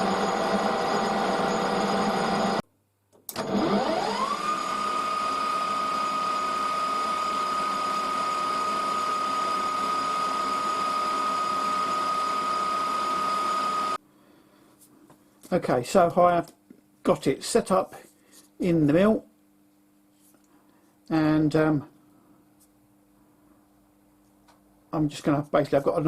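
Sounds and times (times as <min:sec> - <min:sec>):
machine motor whine: 0:00.0 - 0:02.6, 0:03.3 - 0:14.0.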